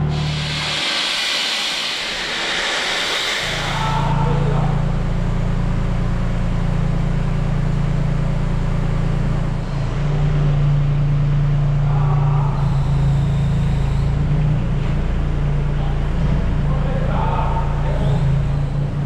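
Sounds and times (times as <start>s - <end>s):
machine engine droning: 0.0s - 19.0s.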